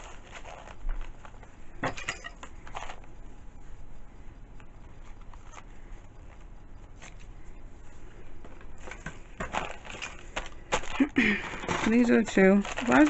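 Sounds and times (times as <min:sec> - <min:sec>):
paper and ribbon rustling: 0:00.0 - 0:01.6, 0:04.8 - 0:13.0.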